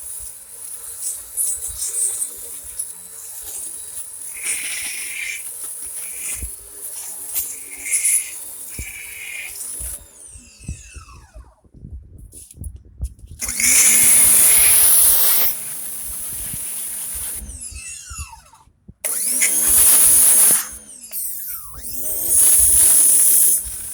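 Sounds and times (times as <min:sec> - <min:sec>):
pressure washer spraying: 0:03.7 - 0:10.5, 0:13.4 - 0:18.1, 0:19.0 - 0:23.9
motor winding down whine: 0:04.1 - 0:11.8, 0:13.4 - 0:23.9.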